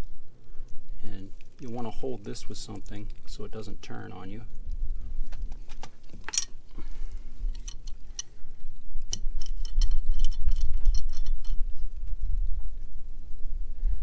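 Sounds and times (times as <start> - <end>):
metal wrenches clicking and clinking: 6.1 - 6.6, 9.1 - 11.6.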